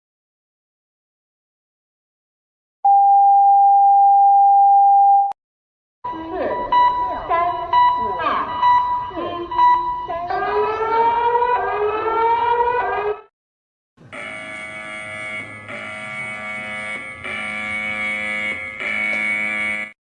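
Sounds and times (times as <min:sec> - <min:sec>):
buzzing pulsed alert tone: 0:14.0 - 0:20.0
rising siren sweeps: 0:14.1 - 0:19.9.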